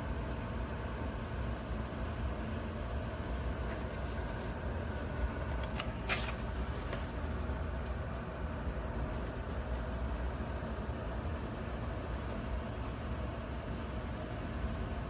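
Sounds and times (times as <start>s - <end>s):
window fan running: 0.0s - 15.0s
brief sharp rustle: 5.8s - 7.3s.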